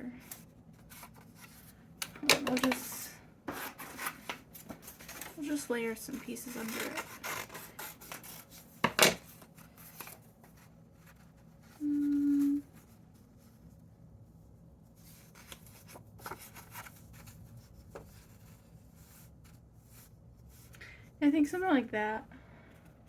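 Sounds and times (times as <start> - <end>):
paper rustling: 0.2 - 13.7, 14.9 - 20.8
brief steady tone: 11.8 - 12.6.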